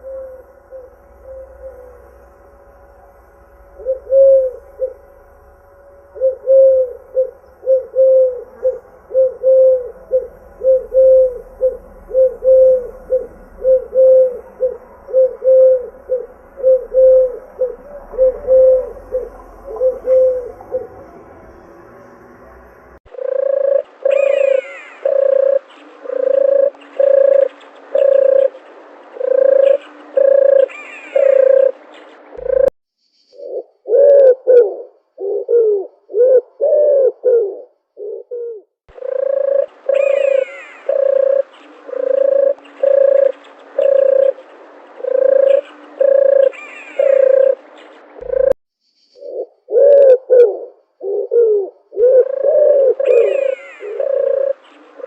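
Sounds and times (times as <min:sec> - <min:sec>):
dove cooing: 0:00.0 - 0:02.0, 0:03.8 - 0:05.0, 0:06.1 - 0:21.2, 0:23.1 - 0:32.7, 0:33.4 - 0:48.6, 0:49.2 - 0:55.0
faint higher bird calls: 0:03.5 - 0:21.7, 0:23.1 - 0:55.0.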